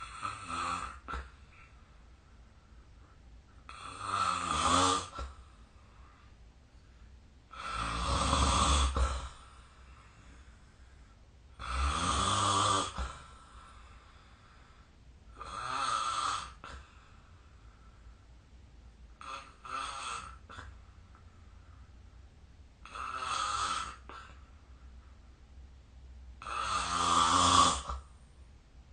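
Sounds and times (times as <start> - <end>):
person snoring: 0.0 - 1.4, 3.7 - 5.4, 7.5 - 9.6, 11.6 - 13.9, 15.4 - 16.9, 19.2 - 20.7, 22.8 - 24.4, 26.4 - 28.0.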